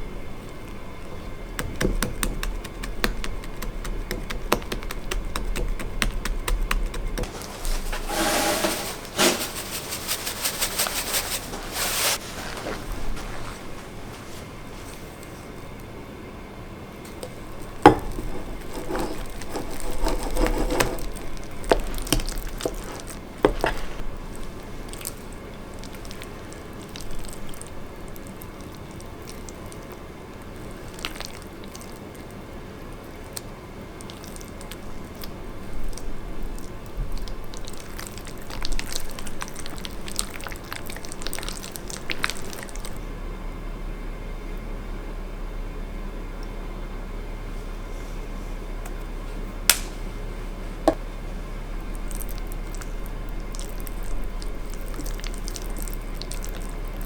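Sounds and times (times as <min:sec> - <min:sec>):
low steady hum: 0:00.0 - 0:57.0
slime squelching by hand: 0:17.2 - 0:43.0, 0:51.8 - 0:57.0.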